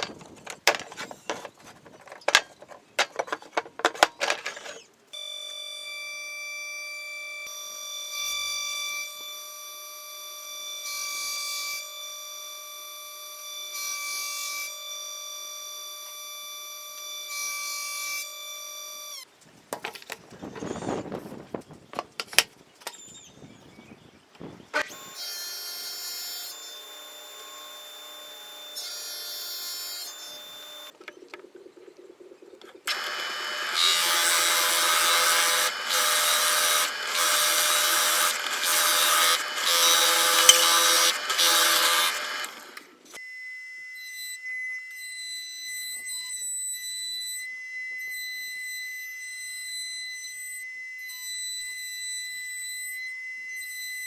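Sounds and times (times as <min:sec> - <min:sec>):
power tool whining: 0:00.0 - 0:15.2, 0:24.8 - 0:30.9, 0:32.8 - 0:43.4
surging cutting or sanding noise: 0:32.9 - 0:43.0.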